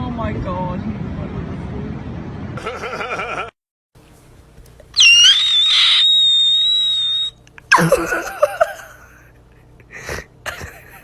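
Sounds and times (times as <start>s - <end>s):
shrill high-pitched whistle: 5.0s - 7.9s.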